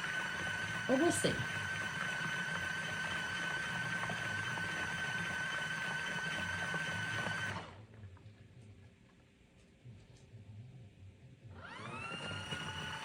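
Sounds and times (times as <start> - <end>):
washing machine motor running: 0.0 - 8.0, 11.5 - 13.0.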